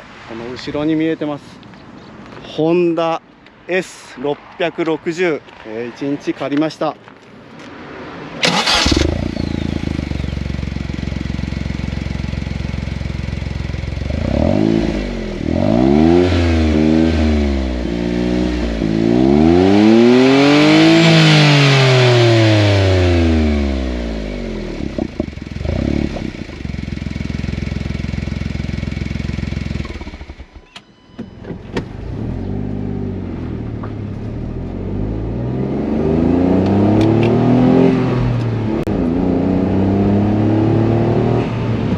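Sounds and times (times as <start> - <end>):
car engine idling and revving: 8.4 - 41.9.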